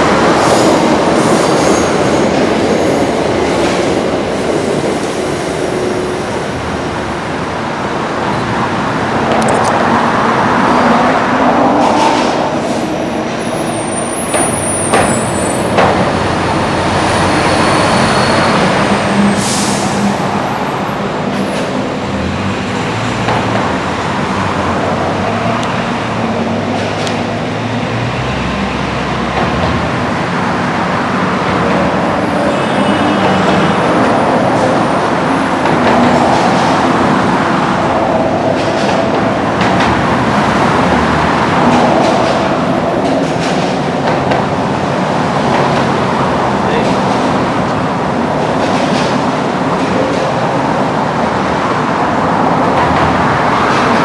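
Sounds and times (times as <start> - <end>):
train rumbling: 0.0 - 54.0
train wheels squealing: 0.4 - 3.8, 13.0 - 21.7.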